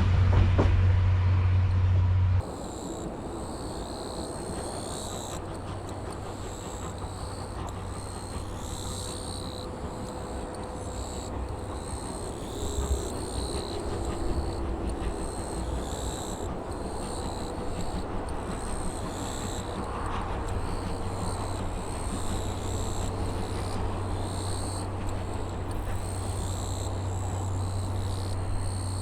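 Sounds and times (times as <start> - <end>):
low rumble: 0.0 - 2.4
cicadas buzzing: 2.4 - 29.0.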